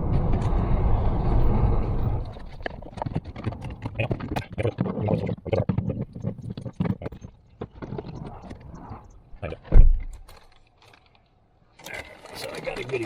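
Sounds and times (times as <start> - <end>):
handling clicks and rustling: 2.3 - 5.0, 9.5 - 13.0.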